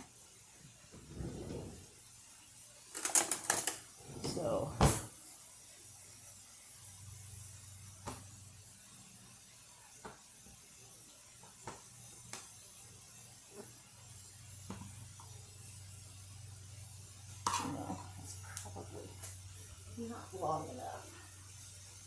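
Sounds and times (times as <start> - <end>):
patties sizzling in a pan: 1.8 - 22.0
kitchen items clicking and knocking: 2.9 - 5.1.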